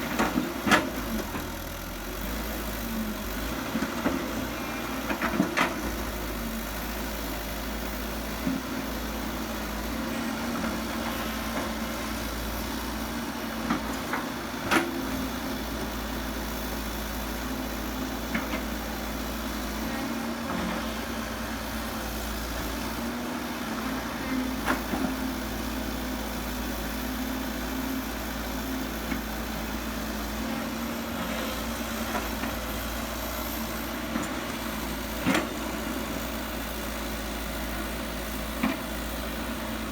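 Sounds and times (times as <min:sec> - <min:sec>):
heavy machinery diesel engine: 0:00.0 - 0:39.9.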